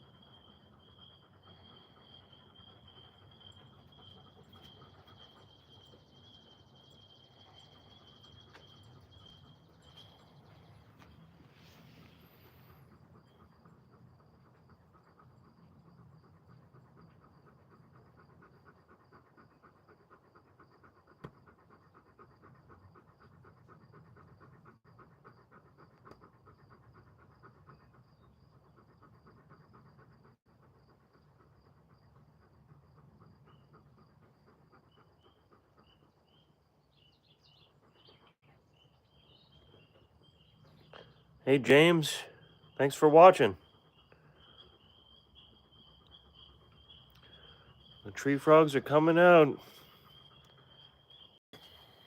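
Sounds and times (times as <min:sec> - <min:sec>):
tree frogs trilling: 0:34.8 - 0:52.0.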